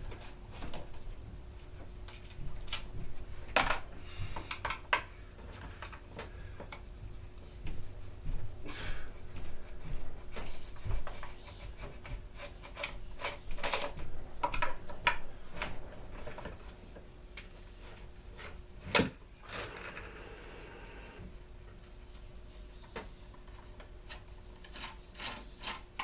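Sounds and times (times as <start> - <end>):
plastic parts clicking and rattling: 11.1 - 16.8.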